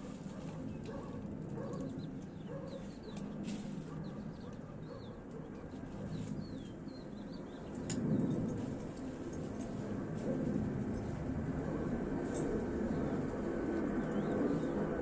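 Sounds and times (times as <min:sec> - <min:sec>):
birds chirping: 0:00.4 - 0:08.5, 0:12.8 - 0:15.0.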